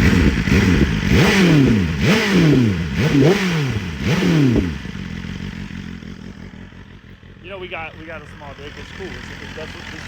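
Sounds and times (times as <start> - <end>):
motorcycle engine revving: 0.0 - 10.0
motorcycle idling: 0.0 - 10.0.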